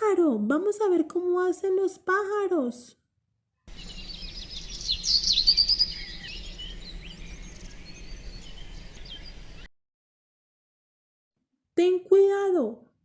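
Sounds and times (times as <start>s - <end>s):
birds chirping and trilling: 3.7s - 9.7s.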